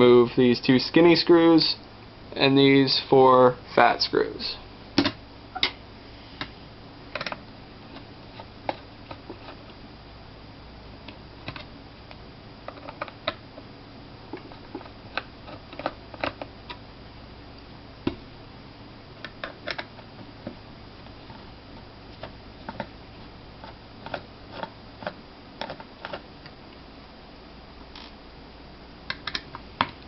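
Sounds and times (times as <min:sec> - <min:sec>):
faint low hum: 0:00.0 - 0:30.0.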